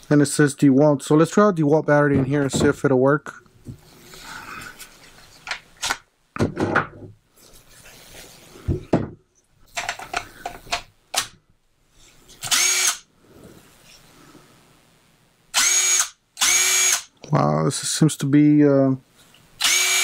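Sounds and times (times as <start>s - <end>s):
power tool motor spinning up: 12.5s - 13.0s, 19.6s - 20.0s.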